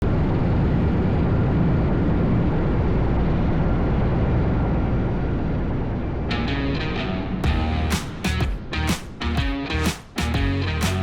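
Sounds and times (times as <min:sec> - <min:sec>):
helicopter rotor and turbine engines: 0:00.0 - 0:06.4.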